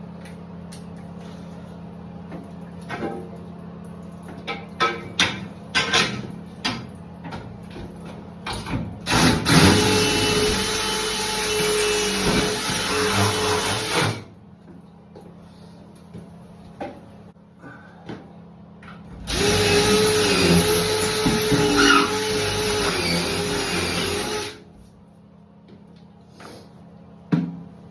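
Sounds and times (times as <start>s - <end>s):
electric drill running: 9.1s - 14.1s, 19.3s - 24.6s.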